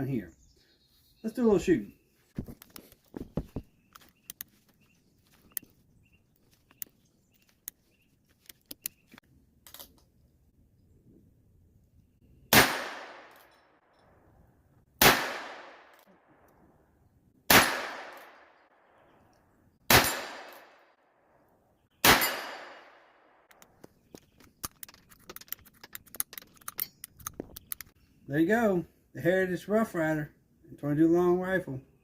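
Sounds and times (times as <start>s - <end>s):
gunshots with long echo: 12.5s - 13.4s, 15.0s - 16.4s, 17.5s - 18.6s, 19.9s - 20.9s, 22.0s - 23.4s.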